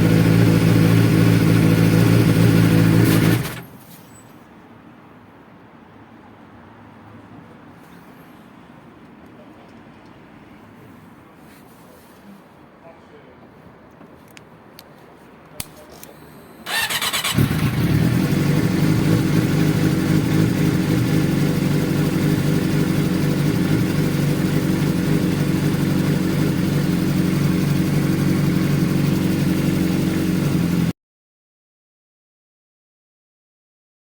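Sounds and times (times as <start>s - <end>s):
motorcycle engine idling: 0.0s - 3.5s, 16.7s - 30.9s
electric starter cranking: 16.7s - 18.0s.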